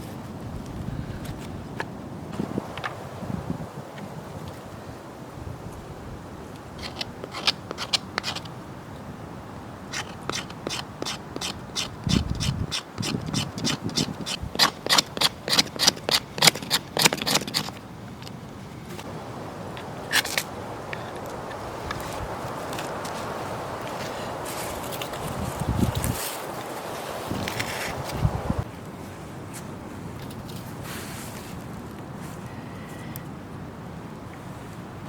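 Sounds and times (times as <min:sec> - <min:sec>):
hand tool scraping: 0:06.8 - 0:08.5, 0:09.9 - 0:17.8, 0:19.8 - 0:28.6.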